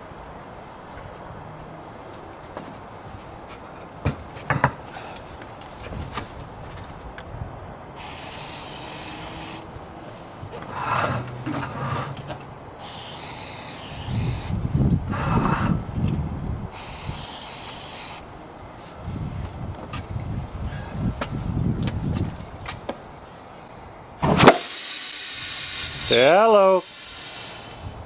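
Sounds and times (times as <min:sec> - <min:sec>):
aerosol spray hissing: 0:08.0 - 0:09.7, 0:12.8 - 0:14.6, 0:16.7 - 0:18.3, 0:24.3 - 0:28.0.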